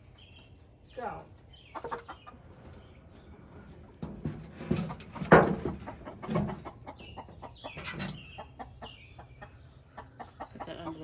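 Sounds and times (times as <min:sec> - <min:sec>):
hen clucking and squawking: 0:01.6 - 0:02.6, 0:05.8 - 0:11.0.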